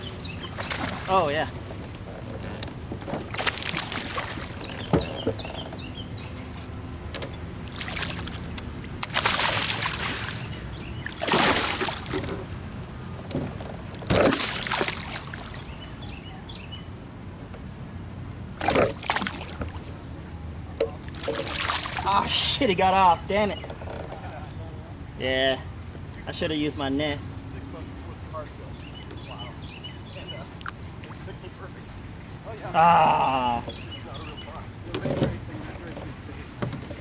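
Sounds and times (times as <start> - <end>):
fish thrashing water splashing: 0.0 - 2.0, 3.2 - 5.2, 7.6 - 12.8, 14.1 - 15.6, 18.5 - 20.0, 21.0 - 22.2.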